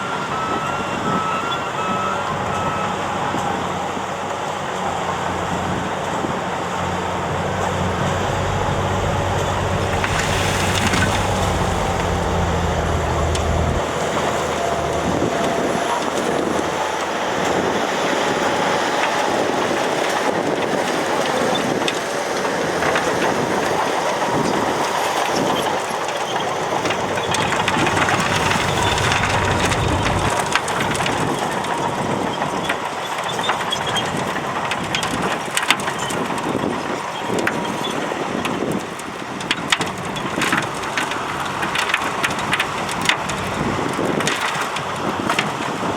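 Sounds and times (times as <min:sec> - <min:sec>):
diesel engine running: 0:02.3 - 0:32.4
soil and gravel grinding: 0:06.8 - 0:19.0, 0:25.3 - 0:32.0.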